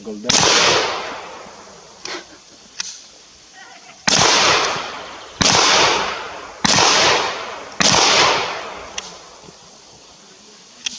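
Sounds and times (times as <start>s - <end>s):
distant gunshot: 0.2s - 1.7s, 4.1s - 9.4s
echoing gunshots: 0.2s - 2.0s, 4.0s - 9.5s.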